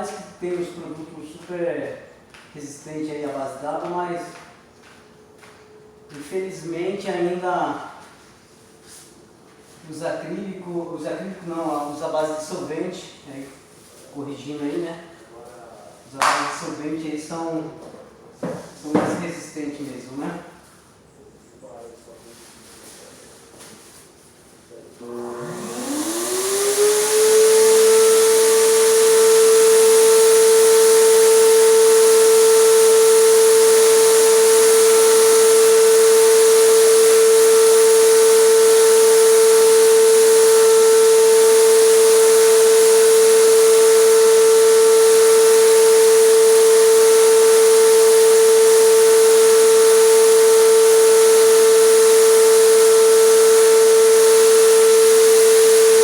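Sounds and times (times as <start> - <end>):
compressor motor humming: 25.0 - 56.0
air hissing: 25.1 - 56.0.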